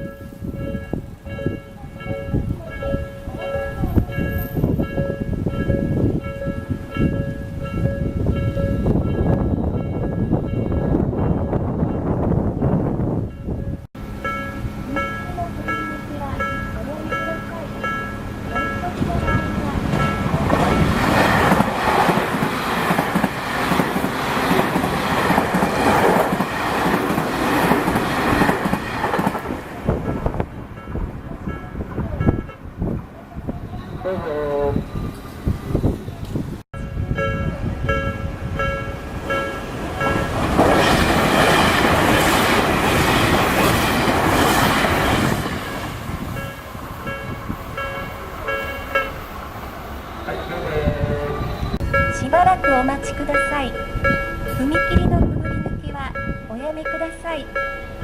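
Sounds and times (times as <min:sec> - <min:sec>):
level-crossing alarm dinging: 0:00.0 - 0:12.1, 0:13.4 - 0:32.8, 0:36.8 - 0:43.8, 0:46.3 - 0:58.0
train wheels rumbling on rail: 0:00.0 - 0:58.0
train wheels clattering over rail joints: 0:39.2 - 0:49.5.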